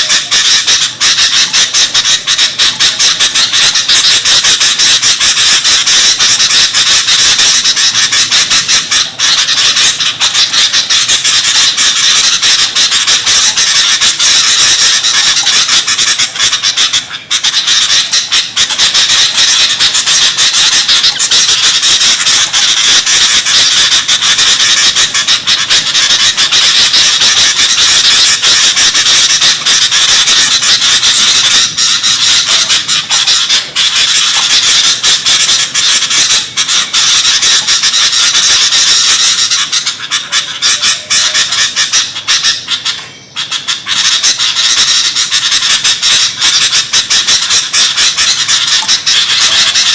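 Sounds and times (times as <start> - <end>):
bulbuls chattering: 0.0 - 49.9.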